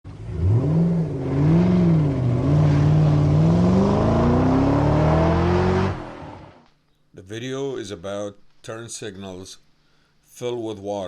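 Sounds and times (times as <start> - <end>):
car engine revving: 0.1 - 6.6.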